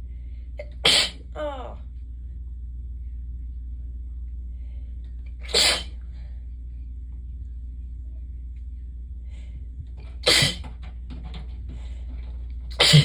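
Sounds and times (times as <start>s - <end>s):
person sneezing: 0.6s - 1.3s, 5.4s - 6.0s, 10.2s - 10.7s, 12.7s - 13.0s.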